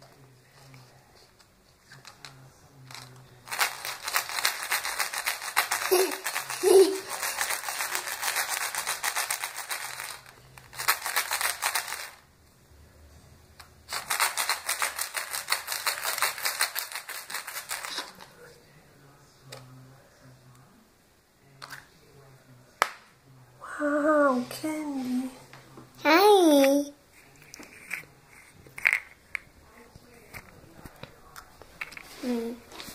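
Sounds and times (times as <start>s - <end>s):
eggs and candy clicking and rattling: 2.9s - 12.2s, 13.9s - 18.3s, 27.4s - 29.5s.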